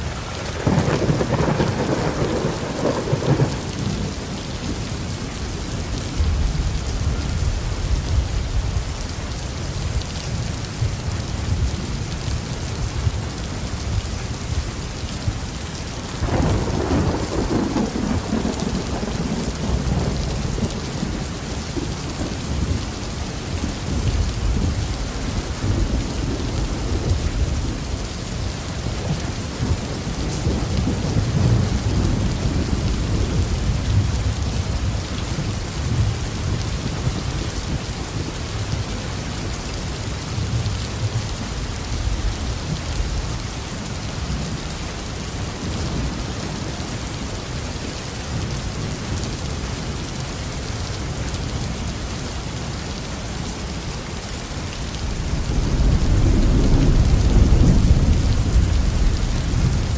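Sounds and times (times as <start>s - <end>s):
heavy rain falling: 0.0s - 59.9s
thunder rumbling: 0.2s - 8.9s, 16.2s - 28.0s, 54.7s - 59.9s.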